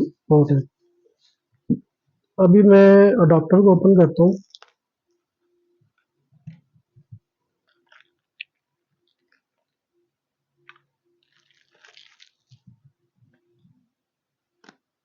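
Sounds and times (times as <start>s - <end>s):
faint clicks and taps: 4.4s - 5.2s
packaging rustling: 11.2s - 12.7s.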